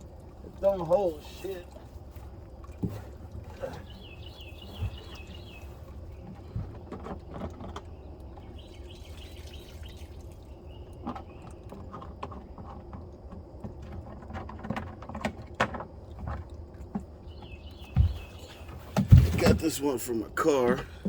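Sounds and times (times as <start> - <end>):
bird chirping: 3.6 - 6.8, 7.6 - 11.7, 17.2 - 21.0
objects knocking and clunking: 6.2 - 8.5, 11.0 - 19.8.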